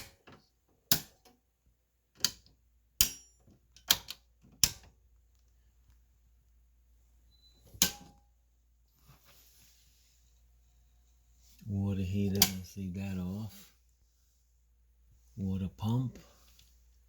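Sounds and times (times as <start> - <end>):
circuit breakers clicking: 2.1 - 4.9, 12.3 - 12.7.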